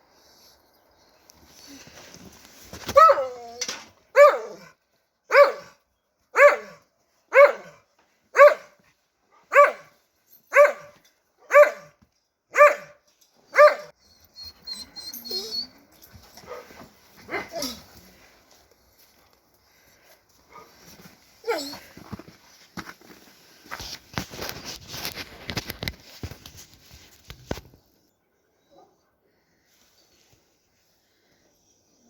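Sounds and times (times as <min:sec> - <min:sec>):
dog barking: 0:04.1 - 0:04.7, 0:05.3 - 0:08.8, 0:09.4 - 0:13.0, 0:13.6 - 0:13.9.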